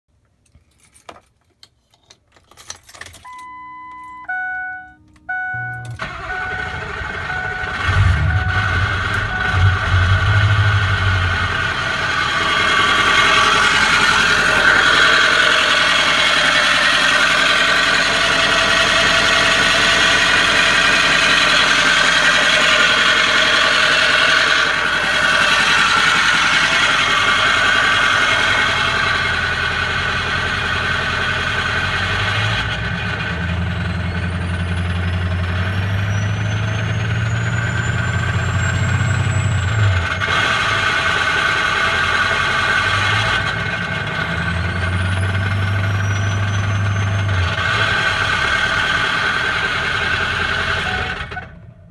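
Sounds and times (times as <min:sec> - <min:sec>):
diesel engine running: 0:03.0 - 0:51.9
rising high whine: 0:03.3 - 0:29.8
grinding noise: 0:06.0 - 0:29.8.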